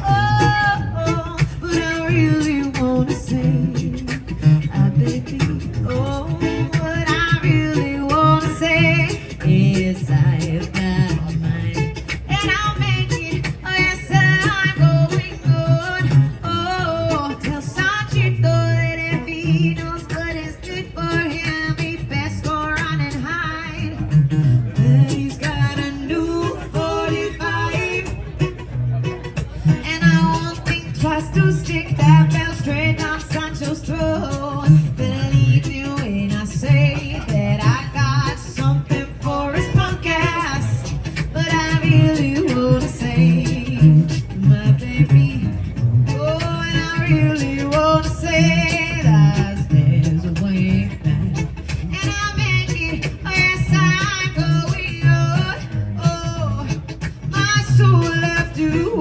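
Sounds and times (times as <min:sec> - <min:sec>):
person singing: 0:00.0 - 0:28.7, 0:29.4 - 0:59.0
acoustic guitar playing: 0:00.0 - 0:59.0
live band music: 0:00.0 - 0:59.0.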